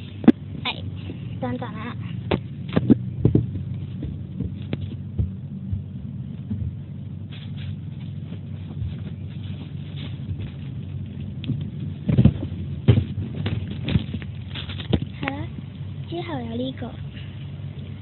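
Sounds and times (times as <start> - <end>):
steady low hum: 0.0 - 18.0
toys knocking and rustling: 2.2 - 15.4.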